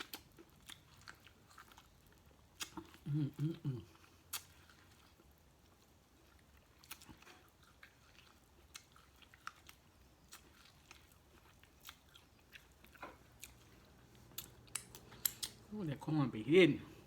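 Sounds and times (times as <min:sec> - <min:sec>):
person chewing food: 0:00.0 - 0:15.7
mouth clicks and smacks: 0:14.4 - 0:15.6.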